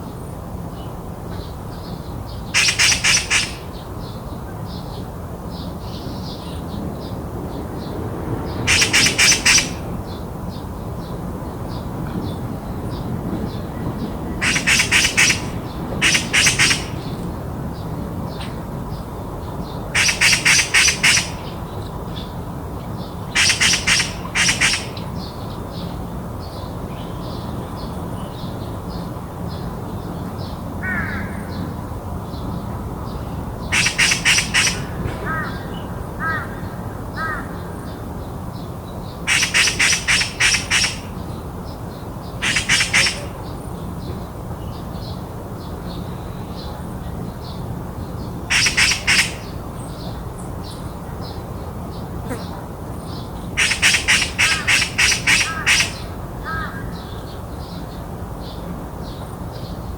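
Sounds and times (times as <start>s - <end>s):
magpie chattering: 2.6s - 3.8s, 8.7s - 9.9s, 14.4s - 17.1s, 20.0s - 21.6s, 23.3s - 25.2s, 33.7s - 35.0s, 39.3s - 41.2s, 42.4s - 43.5s, 48.5s - 49.6s, 52.2s - 52.6s, 53.4s - 56.8s.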